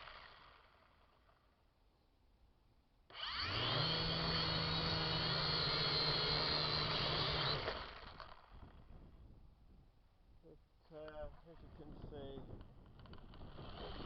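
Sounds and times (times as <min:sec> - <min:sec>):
drone propellers whining: 0:03.1 - 0:08.2.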